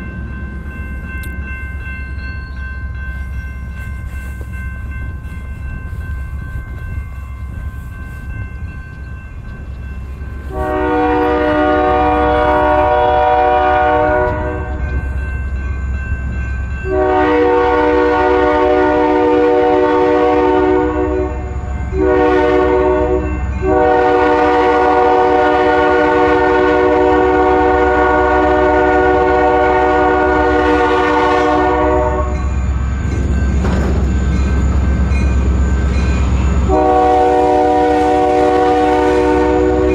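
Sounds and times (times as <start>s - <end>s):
train rumbling: 0.0s - 39.9s
locomotive air horn blasts: 10.5s - 14.8s, 16.9s - 21.4s, 22.0s - 32.5s, 36.7s - 39.9s.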